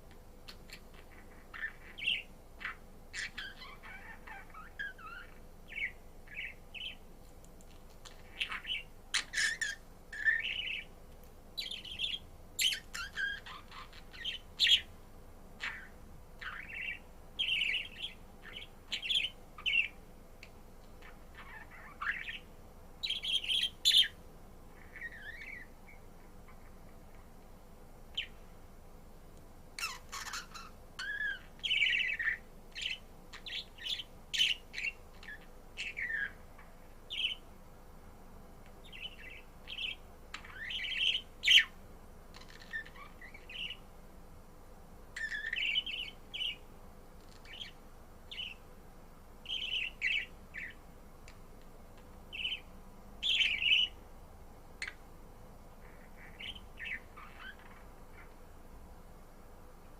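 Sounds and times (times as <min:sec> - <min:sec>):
budgerigar chirping and warbling: 0:00.5 - 0:07.0, 0:08.0 - 0:10.9, 0:11.6 - 0:14.9, 0:15.6 - 0:19.9, 0:21.0 - 0:22.4, 0:24.8 - 0:25.7, 0:29.8 - 0:36.4, 0:42.3 - 0:43.8, 0:45.2 - 0:46.6, 0:49.5 - 0:50.8, 0:52.3 - 0:54.0, 0:55.8 - 0:58.3.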